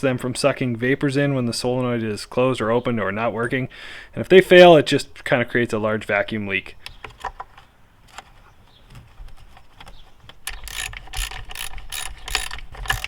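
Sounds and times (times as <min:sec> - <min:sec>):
socket ratchet wrench clicking: 0:10.5 - 0:13.0.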